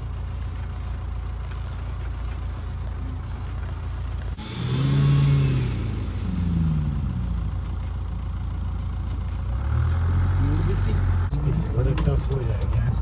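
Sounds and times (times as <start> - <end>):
vehicle engine revving: 4.1 - 13.0
low rumble: 4.2 - 9.9.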